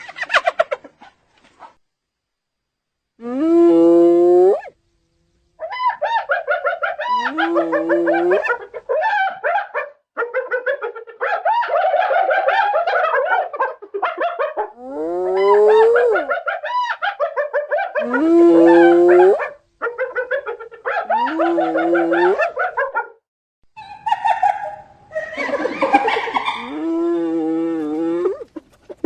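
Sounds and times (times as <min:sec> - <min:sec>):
hyena giggling: 0:00.0 - 0:01.8, 0:06.3 - 0:09.3, 0:10.2 - 0:23.1, 0:23.8 - 0:29.0
hyena whooping: 0:05.6 - 0:22.8, 0:23.8 - 0:28.5.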